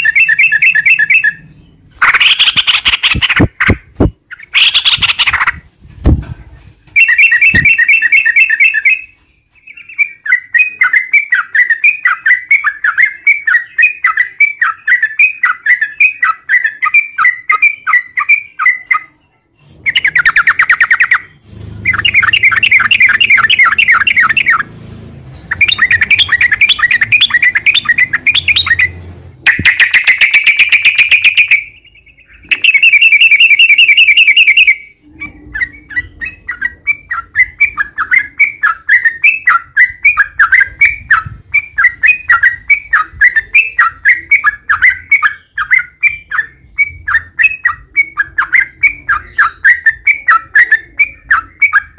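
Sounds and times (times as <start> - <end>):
bird chirps: 0.0 - 5.6, 6.9 - 51.9
bulbul singing rapid notes: 0.0 - 5.6, 19.8 - 35.0.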